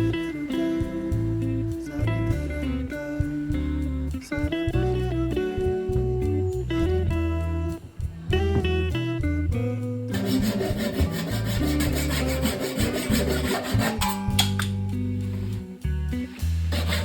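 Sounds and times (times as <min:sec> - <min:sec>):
plucked-string music: 0:00.0 - 0:17.0
hand tool rubbing across wood: 0:10.1 - 0:14.6, 0:16.4 - 0:17.0.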